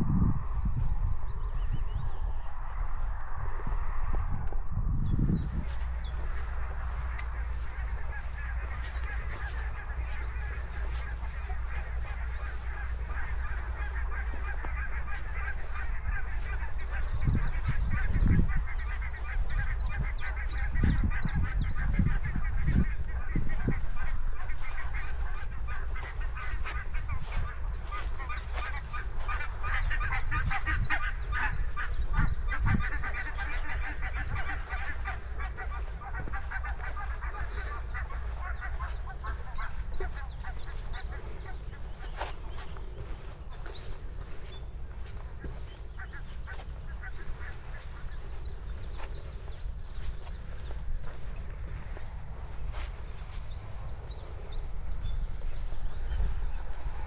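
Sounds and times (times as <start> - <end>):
steady low rumble: 0.0 - 57.0
geese honking: 5.4 - 57.0.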